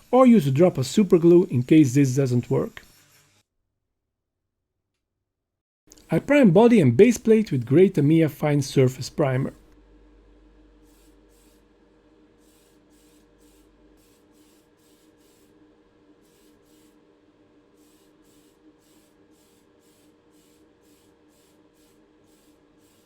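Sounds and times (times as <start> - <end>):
aerosol spray hissing: 10.9 - 11.6, 12.4 - 15.6, 16.2 - 17.0, 17.7 - 23.0.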